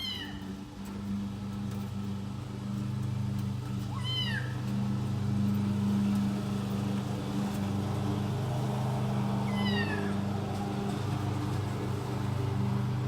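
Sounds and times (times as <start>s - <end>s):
steady low hum: 0.0s - 13.0s
kitten meowing: 3.9s - 4.5s, 9.5s - 10.1s.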